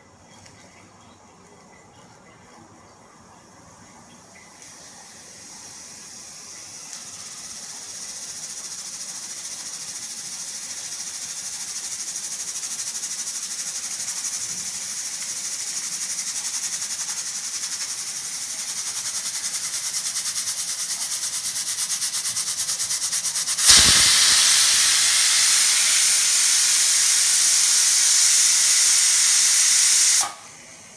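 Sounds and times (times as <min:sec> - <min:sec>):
pressure cooker steam hissing: 0:04.6 - 0:30.9
steam whistle: 0:23.5 - 0:30.4.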